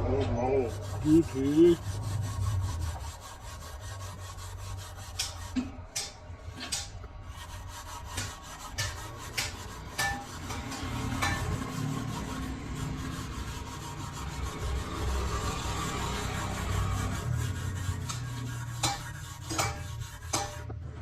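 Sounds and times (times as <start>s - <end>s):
metal scraping: 0.0s - 21.0s.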